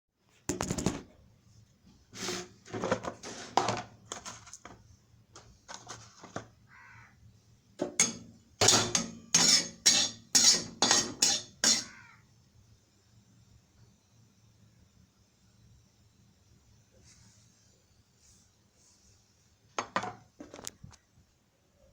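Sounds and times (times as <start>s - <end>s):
spatula scraping a pan: 2.2s - 4.4s, 7.8s - 12.0s.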